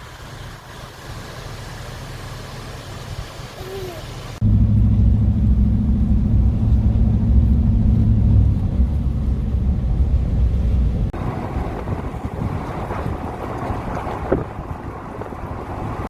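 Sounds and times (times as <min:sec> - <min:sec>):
vehicle driving drone: 0:04.4 - 0:16.0
wind on microphone: 0:04.4 - 0:16.0.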